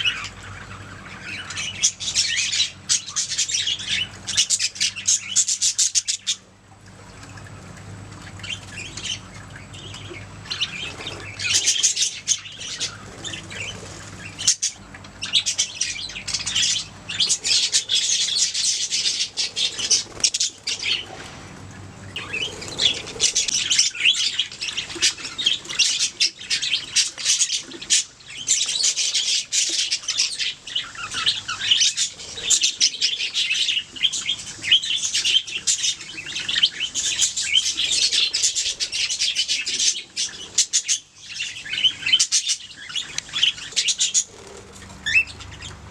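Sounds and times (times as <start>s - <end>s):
budgerigars chattering and warbling: 0.0s - 6.5s, 8.2s - 45.9s.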